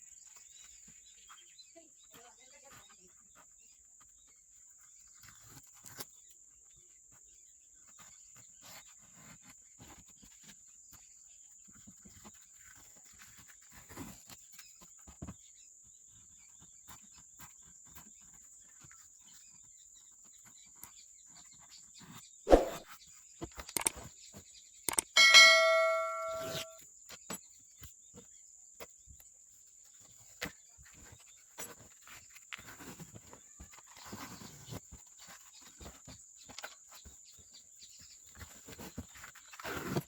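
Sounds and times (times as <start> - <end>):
steady high-pitched tone: 25.1 - 26.7.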